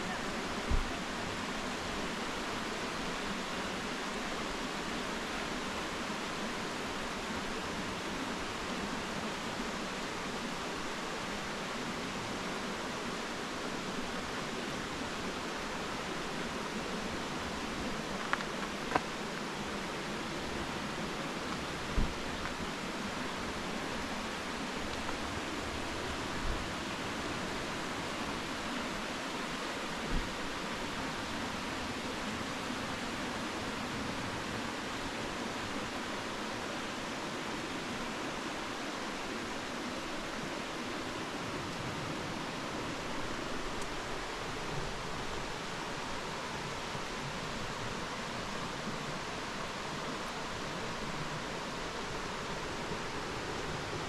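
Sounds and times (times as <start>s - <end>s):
mountain stream rushing: 0.0s - 54.0s.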